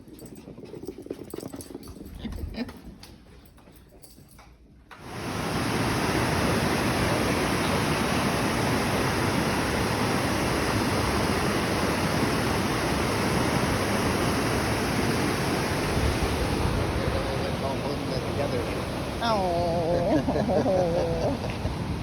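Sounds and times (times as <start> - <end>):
rushing water roar: 5.0 - 22.0.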